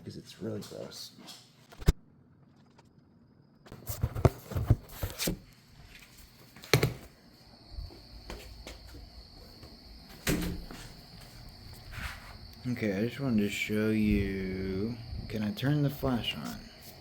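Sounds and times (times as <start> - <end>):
crickets chirring: 2.3 - 17.0
door knocks and clunks: 10.2 - 10.9.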